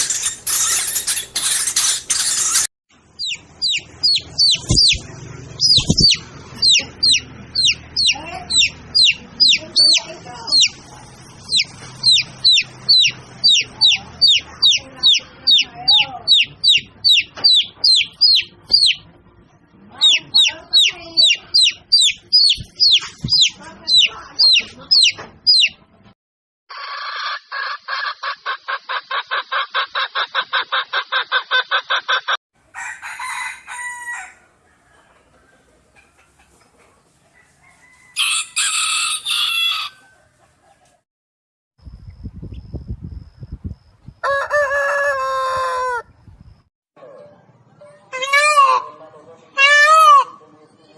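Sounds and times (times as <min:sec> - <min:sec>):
rapid high downward peeps: 0:00.0 - 0:19.0
loud crow: 0:44.2 - 0:46.1.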